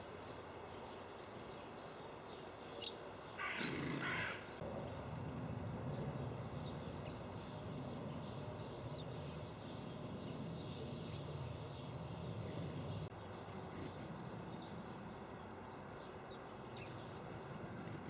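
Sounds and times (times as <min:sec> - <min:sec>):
small birds chirping: 0:00.2 - 0:04.6, 0:06.0 - 0:18.0
low outdoor rumble: 0:04.0 - 0:18.0.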